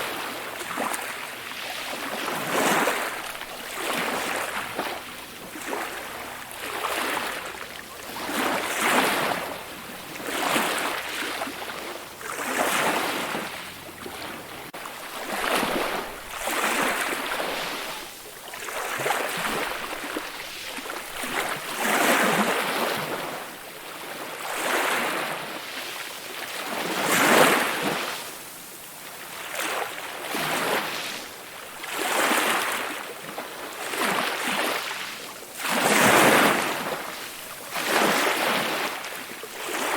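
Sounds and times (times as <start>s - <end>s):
ocean waves breaking: 0.0s - 23.5s, 31.8s - 39.9s.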